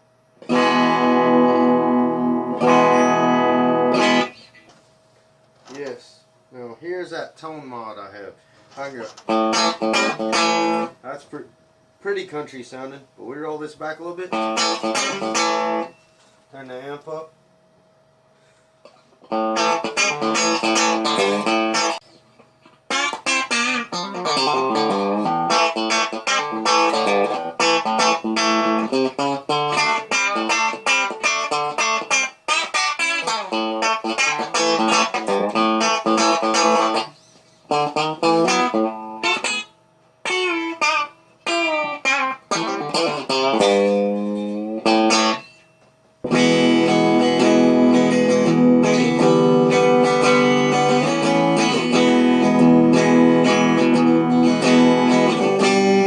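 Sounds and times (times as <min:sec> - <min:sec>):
electric guitar picked phrases: 0:00.4 - 0:04.7, 0:05.7 - 0:15.9, 0:19.2 - 0:22.0, 0:22.9 - 0:45.4, 0:46.3 - 0:56.0.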